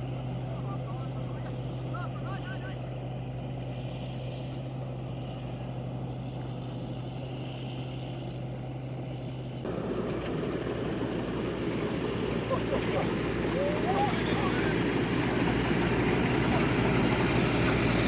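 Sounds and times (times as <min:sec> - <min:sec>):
tractor engine running: 0:09.6 - 0:18.0.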